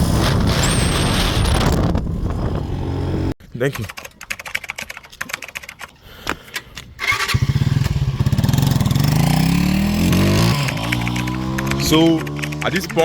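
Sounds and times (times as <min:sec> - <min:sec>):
motorcycle engine starting and revving: 0:02.3 - 0:03.3, 0:07.0 - 0:13.0
clicks and rattles: 0:03.6 - 0:06.6, 0:10.5 - 0:13.0.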